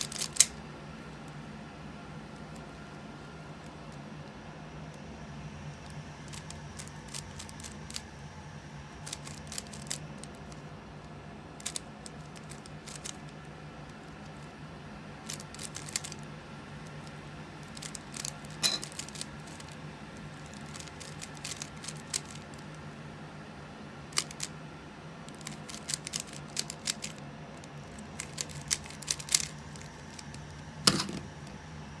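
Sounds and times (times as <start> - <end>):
puzzle cube clicking: 0.0 - 0.6, 6.3 - 8.0, 9.1 - 10.3, 11.6 - 13.3, 15.3 - 16.2, 17.7 - 19.7, 20.6 - 22.6, 24.2 - 24.5, 25.3 - 27.2, 27.9 - 31.4
steady low hum: 0.0 - 32.0.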